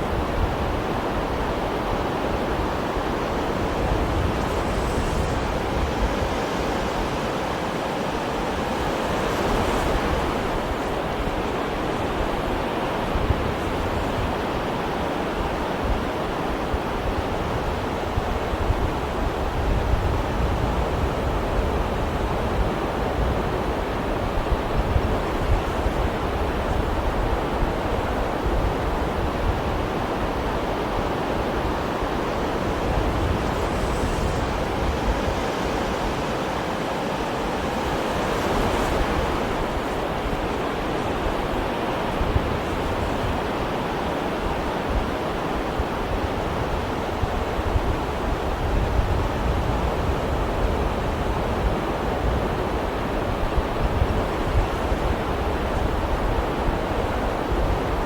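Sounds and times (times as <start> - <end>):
sea waves washing ashore: 0.0 - 58.0.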